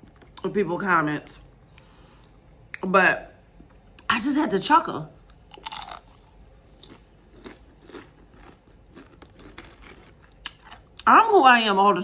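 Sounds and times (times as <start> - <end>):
person chewing food: 5.4 - 11.1.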